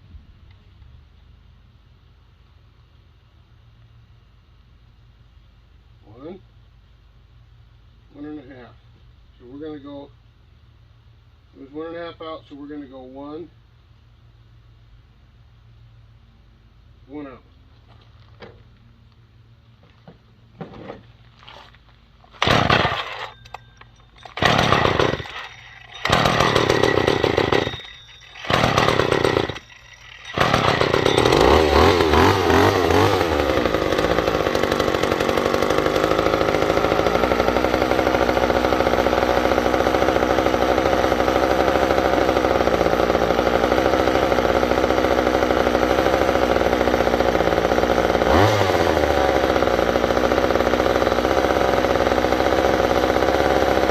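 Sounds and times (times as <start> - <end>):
chainsaw starting and running: 22.3 - 53.9.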